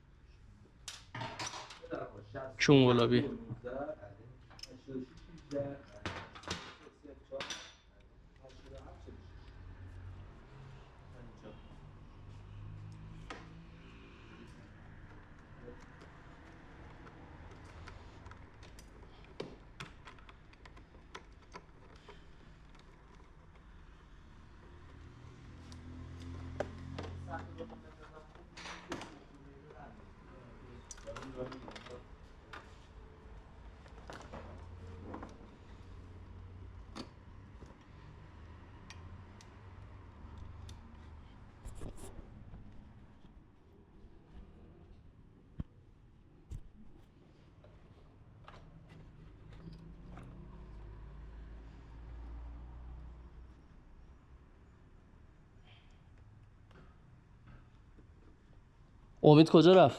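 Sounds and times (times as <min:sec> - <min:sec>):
clicks of tools and metal parts: 0:00.8 - 0:01.9, 0:04.5 - 0:08.9, 0:30.8 - 0:32.7.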